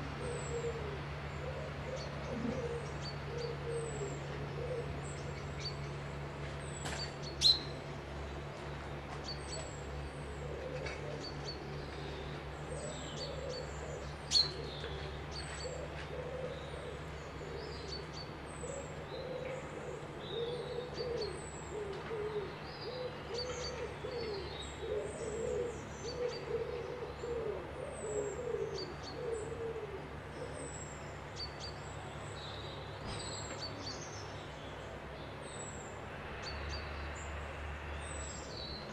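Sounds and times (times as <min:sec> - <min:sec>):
low wavering cooing call: 0:00.0 - 0:05.6, 0:10.2 - 0:30.6.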